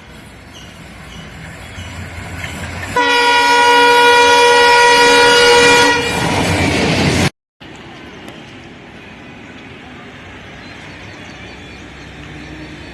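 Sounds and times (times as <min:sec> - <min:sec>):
diesel locomotive engine rumble: 0:00.0 - 0:12.9
locomotive horn blast: 0:03.0 - 0:06.3.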